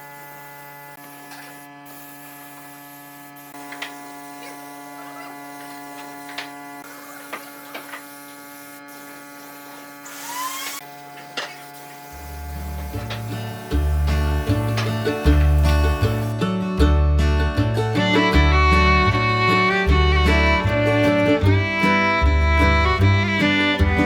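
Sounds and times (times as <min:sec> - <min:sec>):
rising squeak: 0:09.9 - 0:10.8
electrical hum: 0:11.7 - 0:16.3
guitar music: 0:12.4 - 0:24.0.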